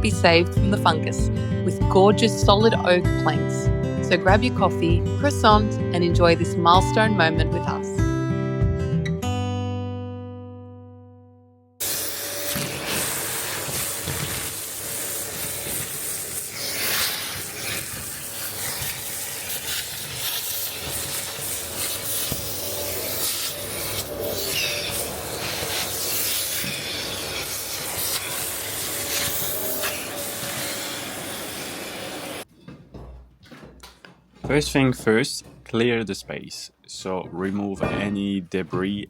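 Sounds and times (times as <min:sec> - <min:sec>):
rough rubbing and hissing: 0:11.8 - 0:32.4.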